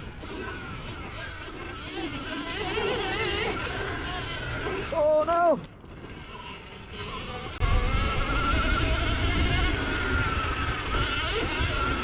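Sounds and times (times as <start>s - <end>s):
electric motor whine: 0.0s - 12.0s
wind rush on microphone: 7.1s - 12.0s.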